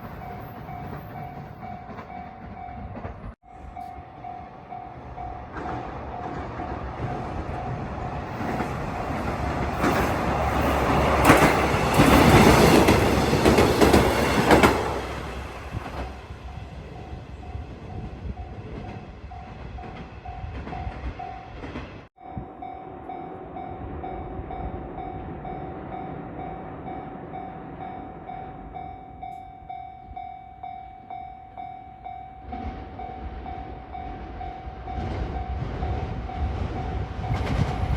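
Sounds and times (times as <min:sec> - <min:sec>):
train wheels clattering: 0:05.0 - 0:16.3, 0:32.5 - 0:37.9.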